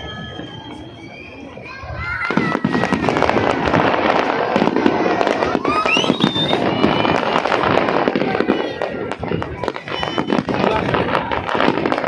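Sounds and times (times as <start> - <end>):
fireworks crackling and popping: 0.0 - 12.0.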